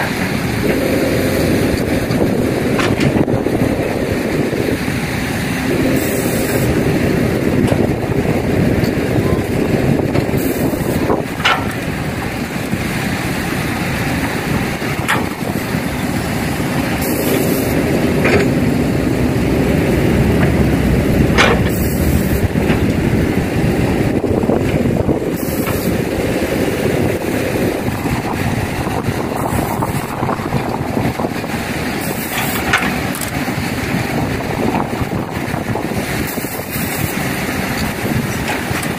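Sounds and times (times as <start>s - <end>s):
heavy diesel engines running: 0.0s - 38.9s.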